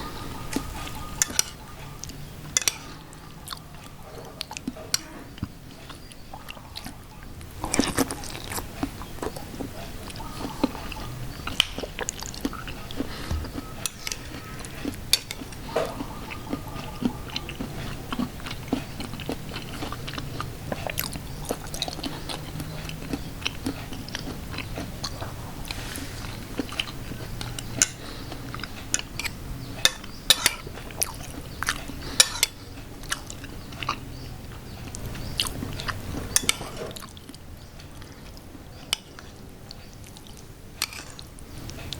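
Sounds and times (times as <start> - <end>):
person slurping soup: 23.5 - 29.3.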